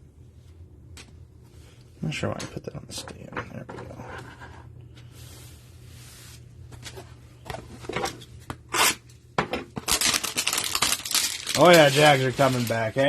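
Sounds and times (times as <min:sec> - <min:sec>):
steady low hum: 0:00.0 - 0:13.0
cardboard packaging rubbing and rustling: 0:09.9 - 0:13.0.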